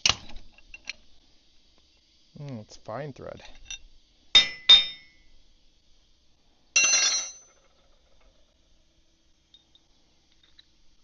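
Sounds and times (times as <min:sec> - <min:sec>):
metal clink: 0:04.4 - 0:05.3, 0:06.8 - 0:08.0.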